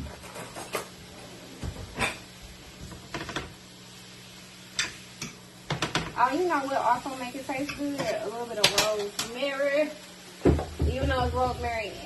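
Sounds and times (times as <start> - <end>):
kitchen utensils knocking and clicking: 7.6 - 9.4.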